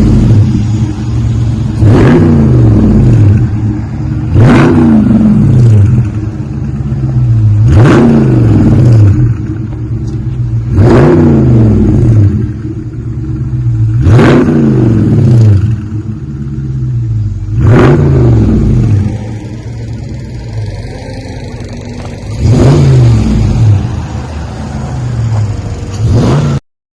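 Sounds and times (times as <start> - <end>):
car engine idling and revving: 0.0 - 26.6.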